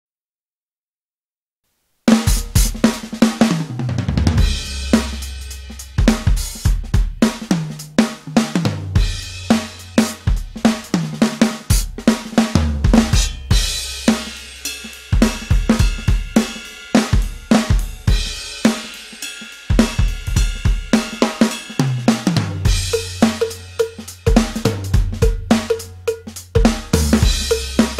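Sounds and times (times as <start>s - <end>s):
drum kit playing a groove: 2.1s - 27.9s.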